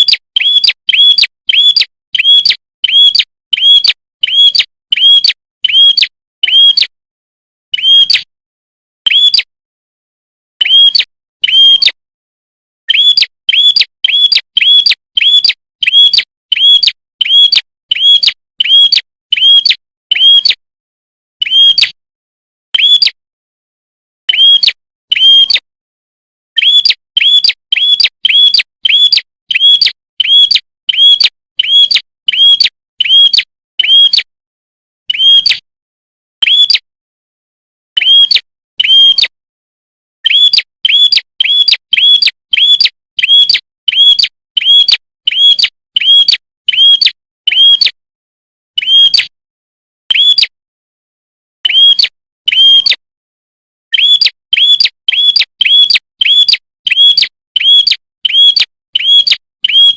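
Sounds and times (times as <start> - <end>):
bird chip calls: 0.0 - 6.9, 12.9 - 20.6, 26.6 - 34.2, 40.3 - 47.9, 54.0 - 59.9.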